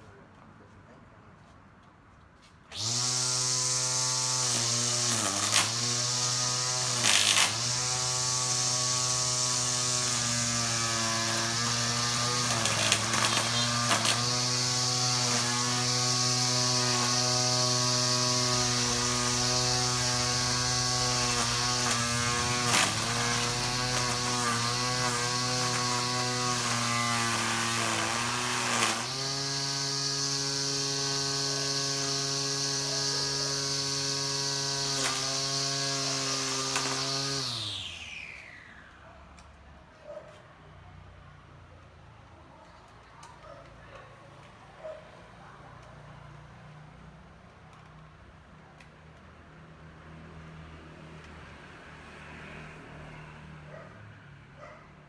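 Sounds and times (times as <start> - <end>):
string trimmer motor whining: 2.7 - 39.6.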